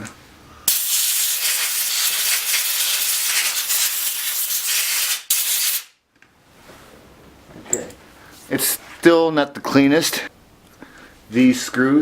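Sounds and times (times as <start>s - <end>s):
compressed air hissing: 0.7s - 5.9s.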